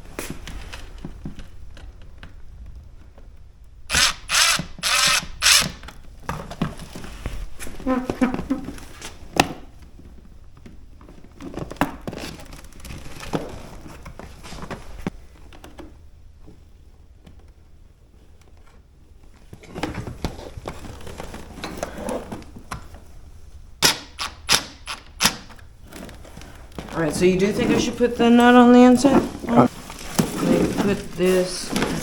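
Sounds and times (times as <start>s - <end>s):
sharp clicks: 3.9s - 5.9s, 23.8s - 25.6s
rustling of small parts: 29.0s - 32.0s.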